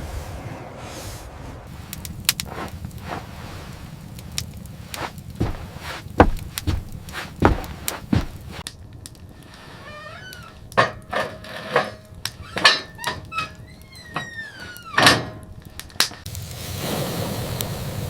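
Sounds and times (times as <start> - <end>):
steady hiss: 1.7 - 8.6
sharp knocks and thuds: 4.9 - 8.6
squeaky creaks: 9.8 - 10.7, 12.3 - 15.3.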